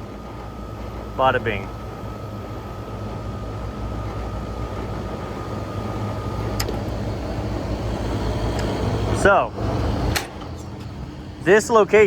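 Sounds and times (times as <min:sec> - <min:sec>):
air conditioner humming: 0:00.0 - 0:12.0
sharp click: 0:06.6 - 0:06.8, 0:10.1 - 0:10.5.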